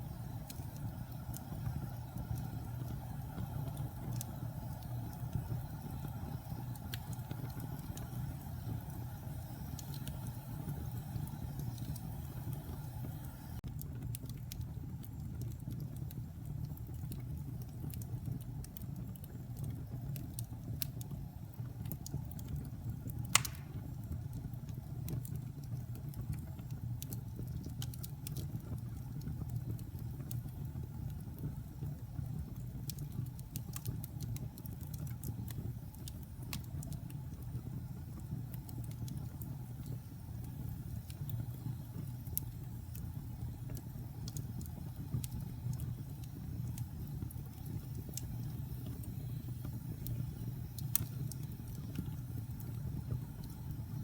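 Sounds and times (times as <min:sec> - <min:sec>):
fire crackling: 0:00.0 - 0:54.0
fire rumbling: 0:00.0 - 0:54.0
loud pop of burning wood: 0:23.3 - 0:24.0.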